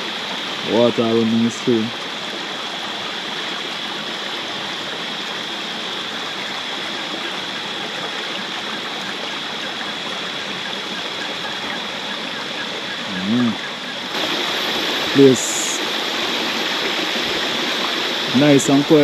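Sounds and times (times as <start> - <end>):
stream water running: 0.0 - 19.0
steady high-pitched tone: 14.2 - 19.0.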